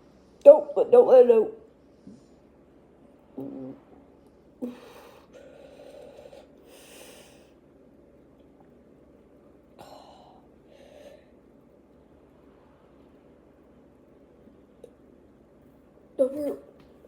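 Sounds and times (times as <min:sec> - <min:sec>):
person breathing hard: 0:04.6 - 0:07.6, 0:09.8 - 0:11.4.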